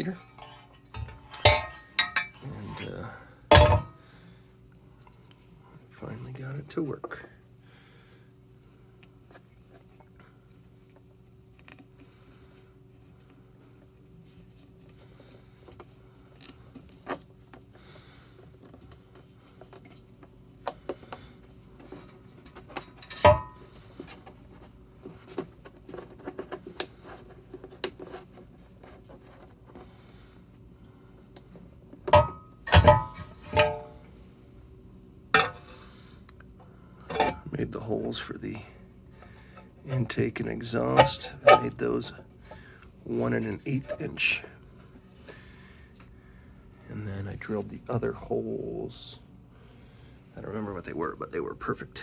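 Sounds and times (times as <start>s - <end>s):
faint steady hum: 0.0s - 52.0s
metal clank: 0.4s - 2.4s, 3.5s - 4.0s, 23.1s - 23.6s, 32.1s - 34.0s, 35.4s - 35.7s, 37.1s - 37.5s, 41.0s - 41.8s.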